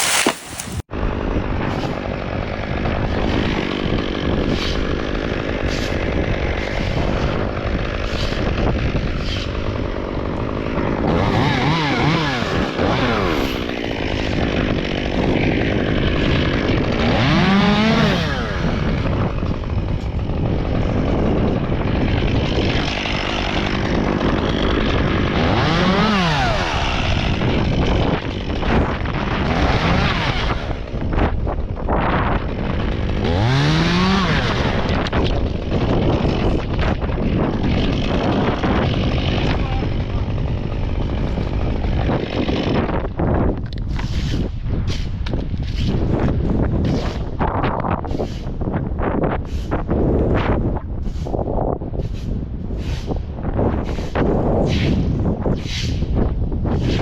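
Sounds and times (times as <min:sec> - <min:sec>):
chainsaw revving: 0:00.0 - 0:00.8, 0:02.1 - 0:31.0, 0:32.4 - 0:43.0.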